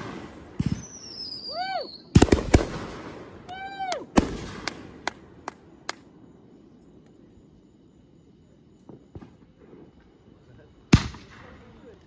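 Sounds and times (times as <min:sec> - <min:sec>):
firework cracks: 0:00.0 - 0:01.2, 0:02.2 - 0:06.1, 0:10.9 - 0:11.9
firework bangs: 0:00.0 - 0:06.0, 0:10.9 - 0:11.9
whistling firework shells: 0:00.0 - 0:07.6, 0:08.8 - 0:12.0.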